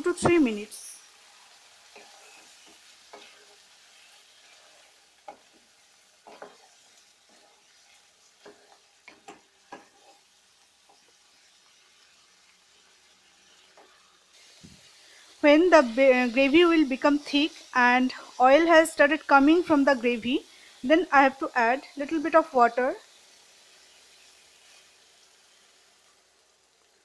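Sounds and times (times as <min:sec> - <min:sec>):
food sizzling in a pan: 0:00.0 - 0:27.0
spatula scraping a pan: 0:01.4 - 0:15.0, 0:23.4 - 0:26.0.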